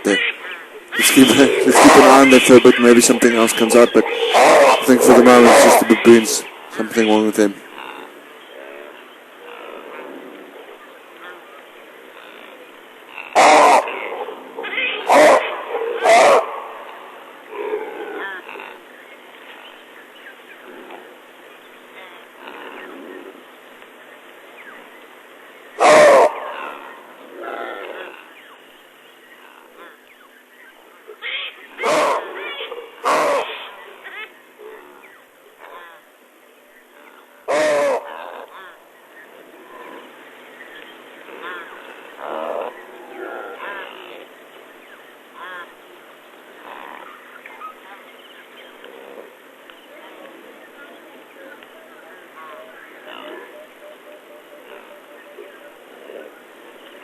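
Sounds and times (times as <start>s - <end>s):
baboons screaming and calling: 0.1s - 6.4s, 13.2s - 18.7s, 25.8s - 28.2s, 31.2s - 35.0s, 37.4s - 38.8s, 53.0s - 56.3s.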